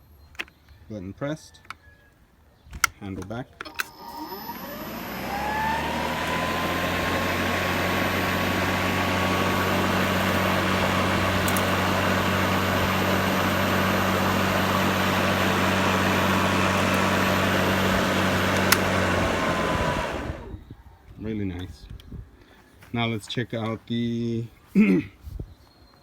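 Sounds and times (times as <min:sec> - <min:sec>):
electric lawn mower whirring: 0:03.6 - 0:20.6.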